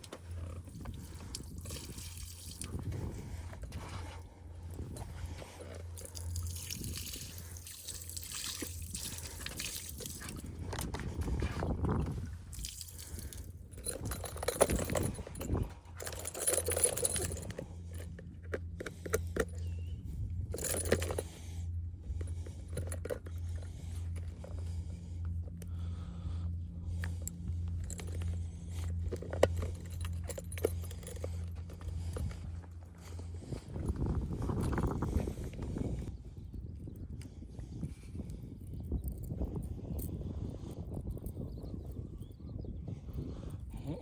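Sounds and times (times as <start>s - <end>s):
pulsing low hum: 0.0s - 44.0s
small metal objects clinking: 12.5s - 18.1s.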